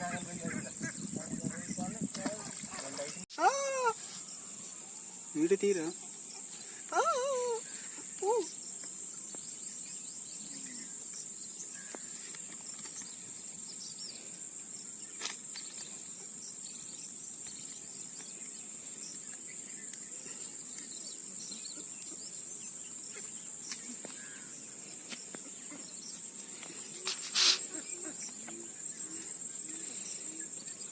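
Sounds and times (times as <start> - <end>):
insect trilling: 0.0 - 13.5, 19.1 - 30.8
faint chirps: 3.0 - 30.9.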